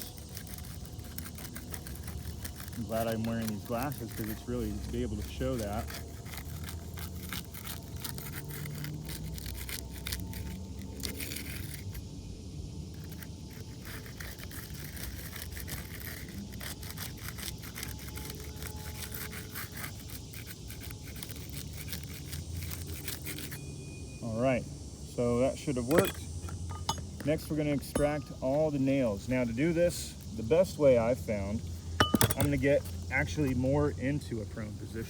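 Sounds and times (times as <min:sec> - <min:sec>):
shingles being pried and scraped: 0:00.0 - 0:12.0, 0:13.0 - 0:23.6, 0:25.8 - 0:28.8, 0:31.8 - 0:33.6.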